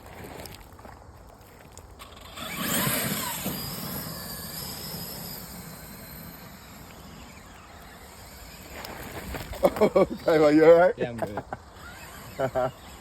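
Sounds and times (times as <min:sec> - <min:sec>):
vehicle motor whining: 0:02.0 - 0:10.6, 0:11.3 - 0:13.0.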